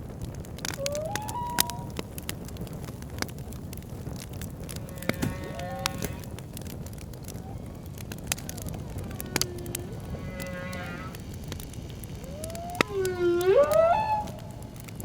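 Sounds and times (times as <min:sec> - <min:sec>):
campfire crackling and popping: 0:00.0 - 0:15.0
whale calls: 0:00.7 - 0:02.0, 0:04.7 - 0:06.4, 0:07.3 - 0:11.3, 0:12.1 - 0:15.0.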